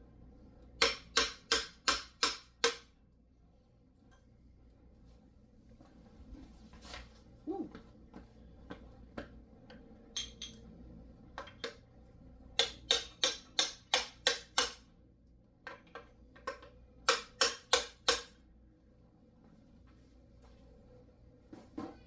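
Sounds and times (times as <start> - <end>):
hammer tapping on metal: 0.8 - 2.9, 12.6 - 14.8, 16.4 - 18.4.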